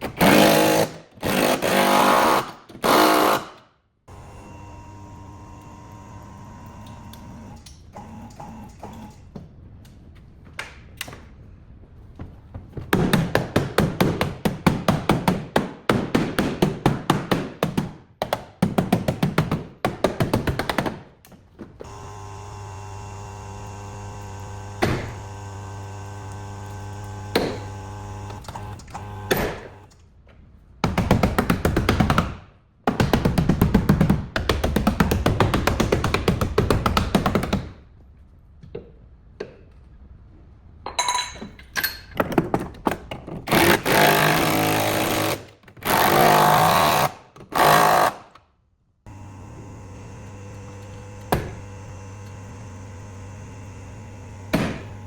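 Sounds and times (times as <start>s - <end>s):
steady machine hum: 4.1s - 7.6s, 21.8s - 29.9s, 49.1s - 55.0s
rapid hammer blows: 49.1s - 55.0s.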